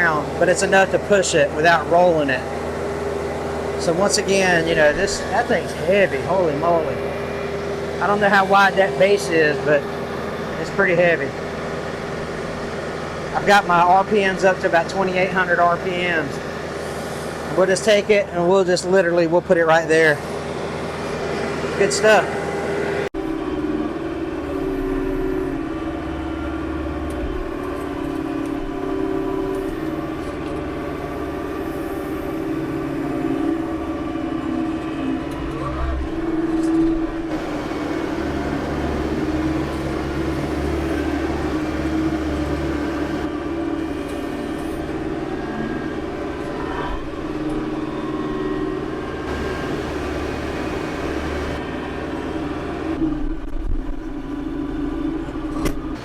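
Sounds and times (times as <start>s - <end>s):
tractor diesel engine running: 0.0s - 14.9s, 37.3s - 43.3s, 49.2s - 51.6s.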